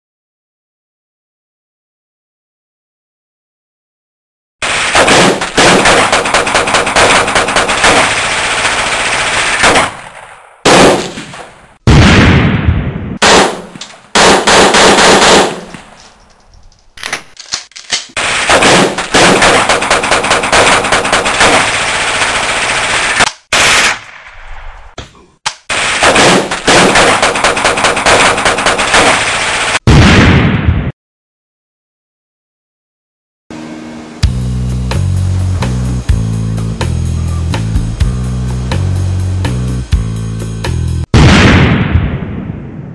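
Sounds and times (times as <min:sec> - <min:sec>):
machine-gun fire: 0:04.6 - 0:15.8, 0:18.2 - 0:24.1, 0:25.7 - 0:30.9
heavy blast with deep rumble: 0:11.8 - 0:13.5, 0:29.9 - 0:30.9, 0:41.1 - 0:42.9.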